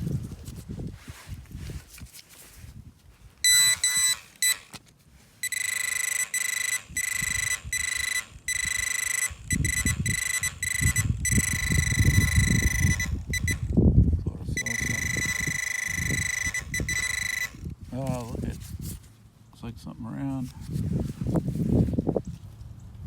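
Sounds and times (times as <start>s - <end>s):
metal detector beeps: 3.4s - 4.8s, 5.4s - 13.8s, 14.5s - 17.8s
metal detector buzzing tone: 3.4s - 4.8s, 5.4s - 13.8s, 14.6s - 17.8s
digging scraping and rustling: 14.6s - 19.2s.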